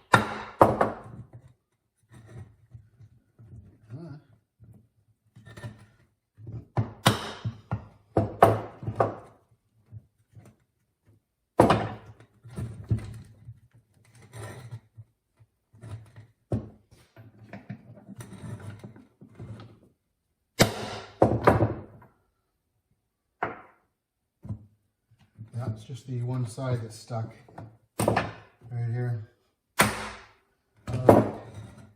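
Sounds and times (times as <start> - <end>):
metal parts knocking and scraping: 12.0 - 19.8.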